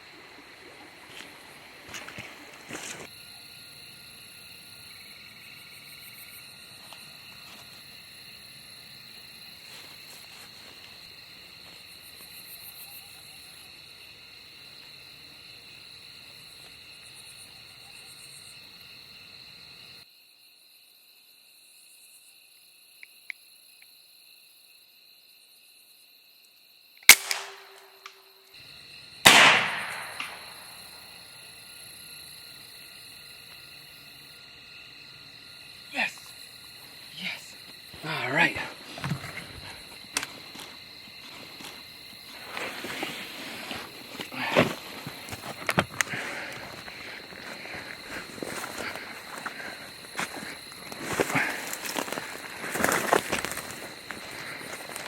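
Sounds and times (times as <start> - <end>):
crickets chirping: 0.0 - 55.0
air rifle cracks: 27.0 - 28.2, 29.3 - 30.6.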